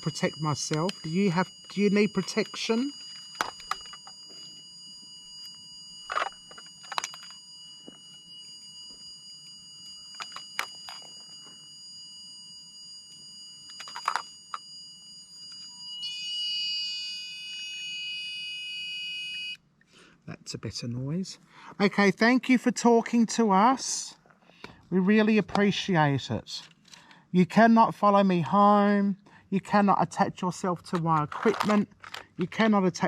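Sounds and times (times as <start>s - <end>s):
steady high electronic tones: 0.0s - 11.6s
warbling electronic alarm tones: 0.0s - 19.6s.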